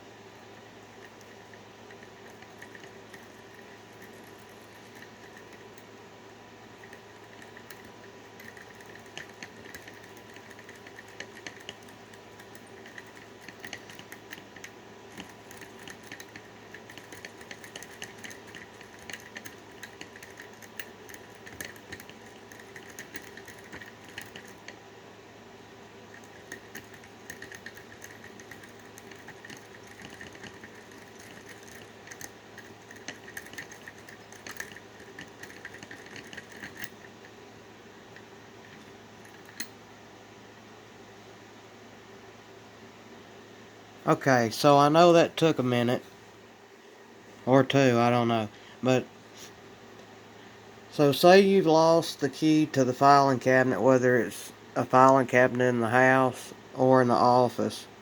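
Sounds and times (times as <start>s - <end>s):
steady hum: 0.0s - 58.0s
lock pick scraping and clicking: 1.0s - 5.9s, 6.8s - 24.8s, 26.1s - 37.2s, 38.2s - 39.8s.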